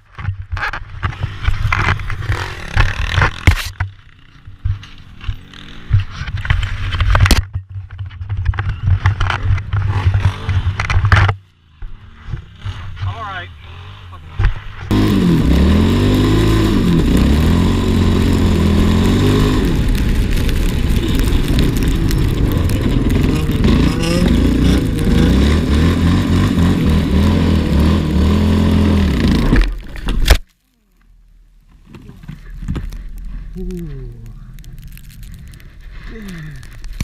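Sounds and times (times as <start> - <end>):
atv engine revving: 2.0 - 6.2, 11.9 - 30.3.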